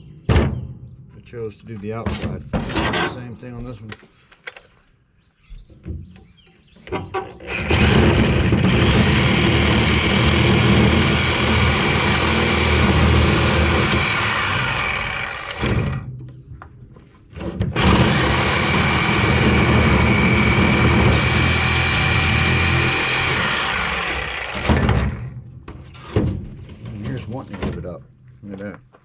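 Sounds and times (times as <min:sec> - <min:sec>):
power tool cutting metal coil: 0:07.5 - 0:16.1, 0:17.8 - 0:25.3.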